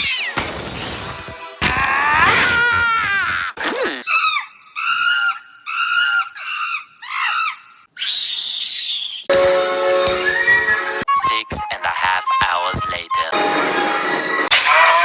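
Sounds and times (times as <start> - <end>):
cartoonish animal squealing: 4.1 - 9.3.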